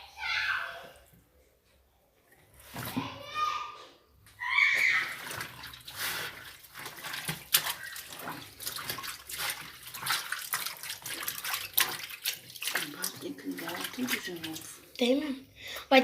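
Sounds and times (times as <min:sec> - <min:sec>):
water sloshing in washing machine: 0:02.3 - 0:03.1, 0:04.4 - 0:15.3.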